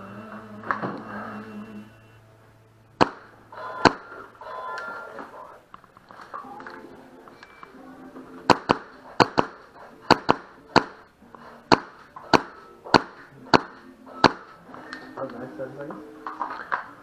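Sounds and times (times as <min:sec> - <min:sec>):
airsoft gun firing: 0:03.0 - 0:04.8, 0:08.5 - 0:11.0, 0:11.7 - 0:14.6.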